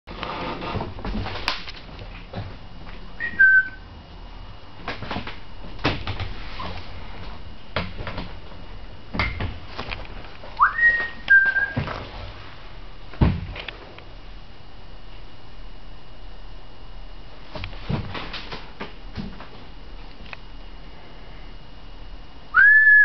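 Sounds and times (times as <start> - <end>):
whistled two-note calls: 3.2 - 3.8, 10.6 - 11.8, 22.6 - 23.0.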